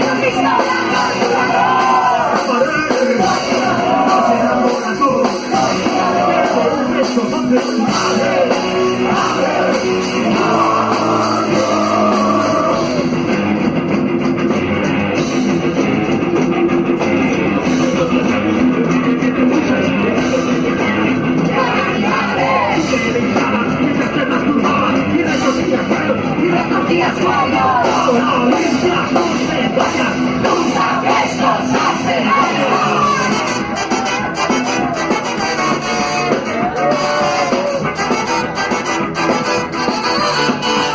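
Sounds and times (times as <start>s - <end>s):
person singing or shouting: 0.0s - 13.0s, 20.7s - 23.6s, 24.2s - 38.5s
bass guitar: 0.0s - 40.9s
drums with cymbal strokes: 0.0s - 40.9s
electric guitar: 0.0s - 40.9s.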